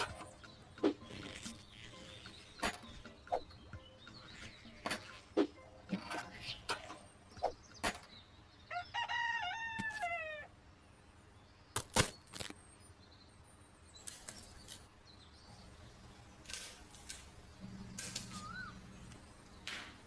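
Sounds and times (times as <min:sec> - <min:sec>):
rooster crowing: 0:08.7 - 0:10.5.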